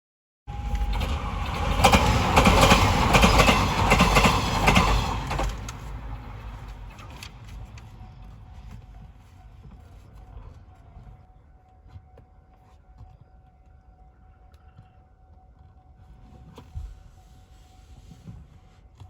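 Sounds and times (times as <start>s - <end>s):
train wheels clacking over rail joints: 0.6s - 8.0s.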